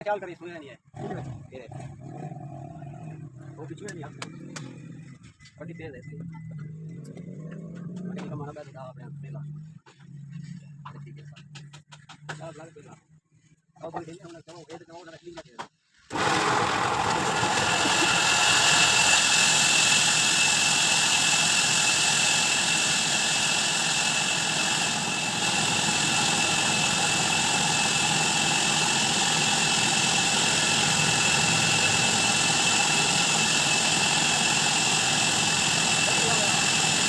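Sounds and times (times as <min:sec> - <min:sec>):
band saw whining: 0:16.1 - 0:37.0.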